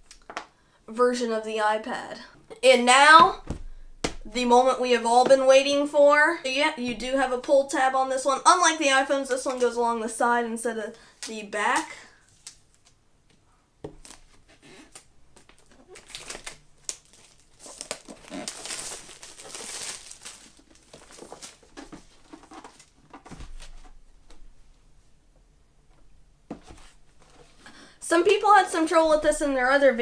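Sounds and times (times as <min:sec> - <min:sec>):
wrapping crinkling: 0:14.0 - 0:23.7.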